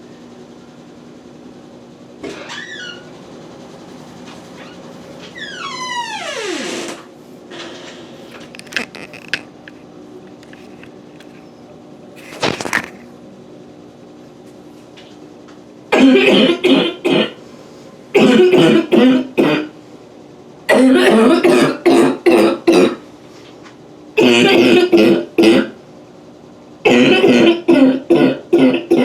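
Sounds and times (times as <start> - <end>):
woman coughing: 15.9 - 17.4, 18.2 - 19.7, 20.7 - 23.0, 24.2 - 25.8, 26.9 - 29.0.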